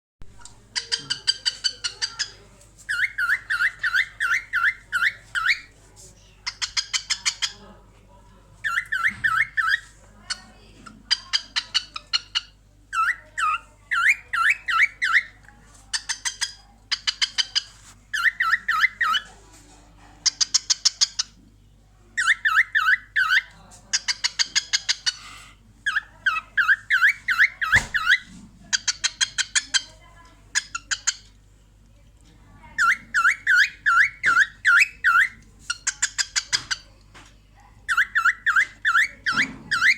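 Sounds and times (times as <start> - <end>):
cockatiel chattering: 0.7 - 5.7, 6.4 - 7.6, 8.6 - 19.3, 20.2 - 21.4, 22.2 - 31.4, 32.8 - 36.9, 37.9 - 39.9.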